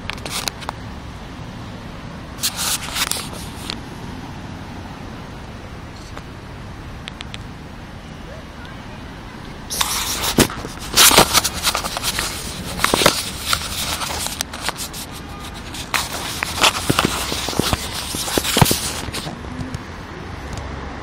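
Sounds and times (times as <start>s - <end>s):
crackling and scraping: 0.0s - 0.8s, 2.4s - 3.8s, 9.7s - 19.8s
rustling: 2.4s - 3.8s, 9.7s - 19.4s.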